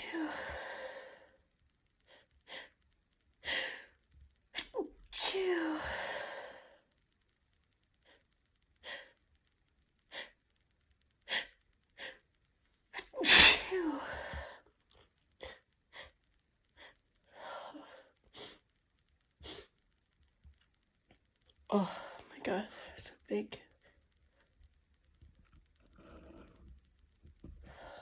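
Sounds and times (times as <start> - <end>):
woman sneezing: 13.0 - 14.1.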